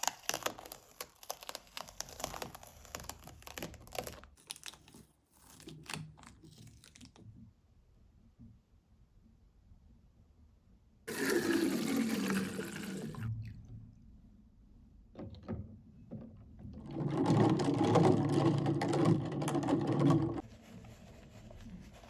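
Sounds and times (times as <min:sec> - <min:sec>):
water running: 0:11.1 - 0:13.6.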